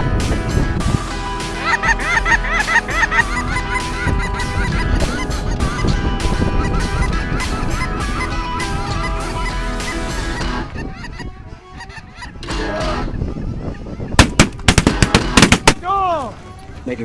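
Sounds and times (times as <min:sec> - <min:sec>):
background music beat: 0:00.0 - 0:13.2, 0:14.1 - 0:15.8
geese honking: 0:01.2 - 0:17.0.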